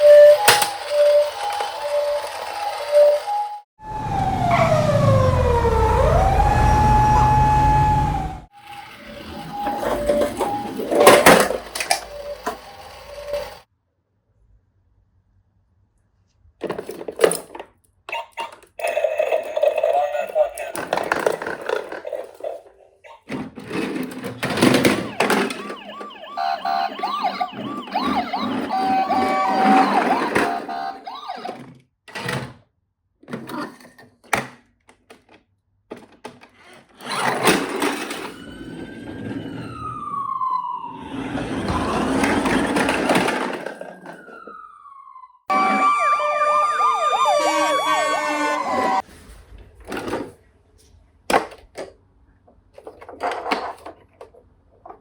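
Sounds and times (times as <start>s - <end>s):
toy electronic sirens: 0.0s - 13.7s, 24.4s - 31.7s, 37.0s - 49.0s.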